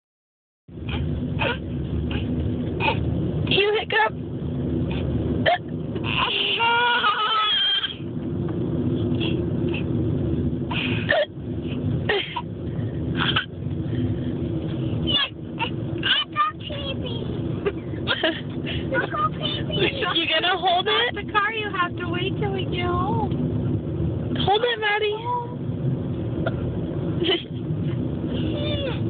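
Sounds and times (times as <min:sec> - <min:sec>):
car road noise: 0:00.7 - 0:29.0
child squealing: 0:06.0 - 0:08.0, 0:15.1 - 0:16.4.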